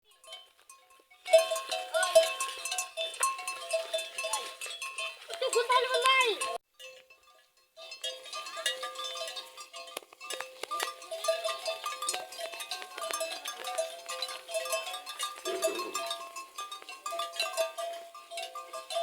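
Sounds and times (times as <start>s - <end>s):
livestock bells clanking: 0.1s - 19.0s.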